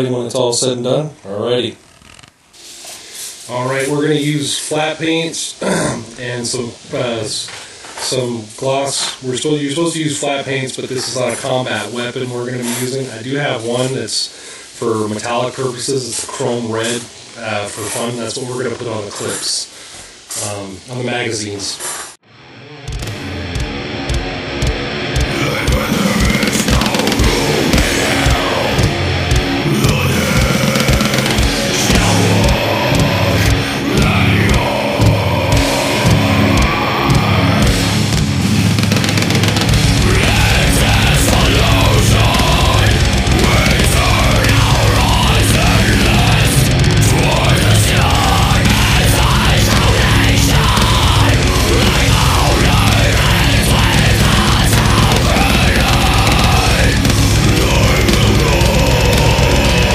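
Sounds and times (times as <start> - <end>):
drums: 21.8 - 59.9
distorted guitars: 22.2 - 59.9
heavy metal music: 22.2 - 59.9
shouted vocal: 25.2 - 59.9.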